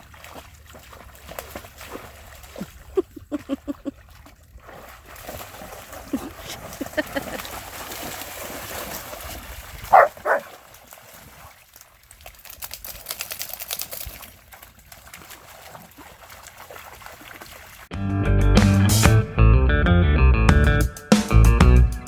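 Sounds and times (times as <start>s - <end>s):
running creek water: 0.0s - 17.9s
dog barking: 9.9s - 10.6s.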